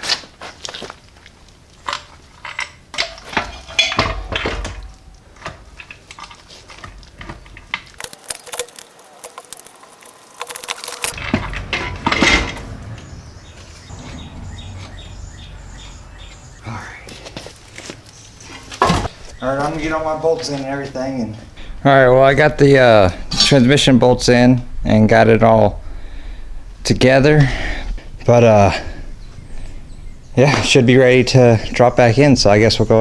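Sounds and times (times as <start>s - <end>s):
metal tools clinking and clanking: 1.9s - 7.3s, 8.0s - 12.6s.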